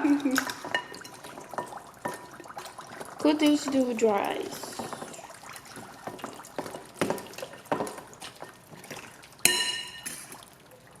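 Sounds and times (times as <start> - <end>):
dry ice bubbling in water: 0.0 - 11.0
sharp plops and pops: 0.1 - 11.0
clink on bowl: 9.5 - 10.3.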